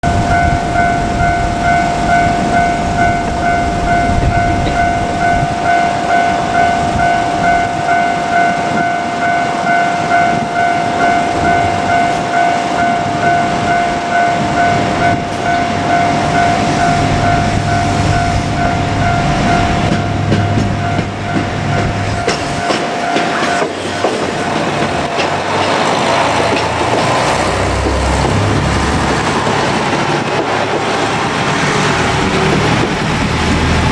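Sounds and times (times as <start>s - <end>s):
level crossing bell ringing: 0.0s - 26.2s
diesel railcar rumbling: 0.0s - 33.9s
broad rumble: 12.7s - 33.9s.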